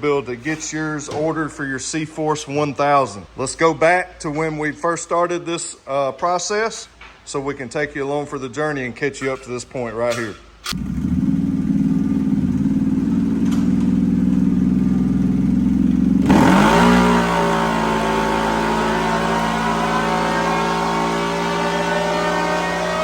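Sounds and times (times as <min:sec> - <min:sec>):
engine revving: 0:10.7 - 0:23.0.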